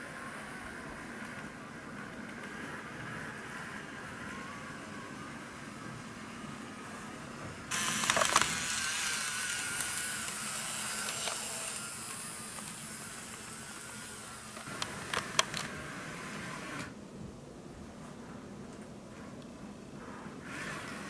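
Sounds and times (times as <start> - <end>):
model train running: 0.0 - 16.0
faint motor whine: 0.0 - 21.0.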